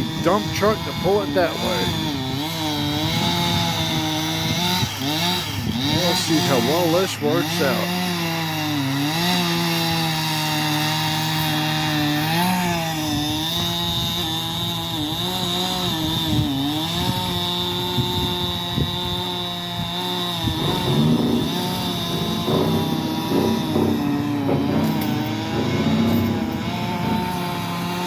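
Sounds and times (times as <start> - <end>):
chainsaw cutting wood: 0.0 - 28.0
second engine rising: 20.4 - 28.0.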